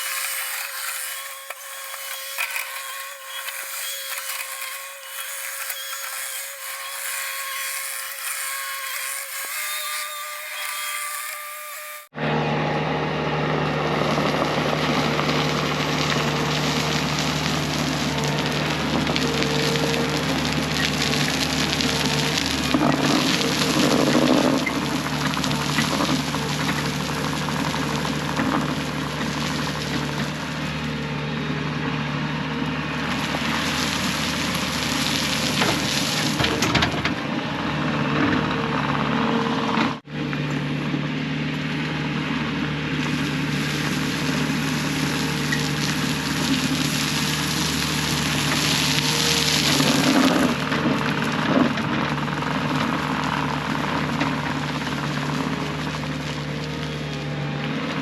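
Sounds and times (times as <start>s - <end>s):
diesel engine running: 12.1s - 58.0s.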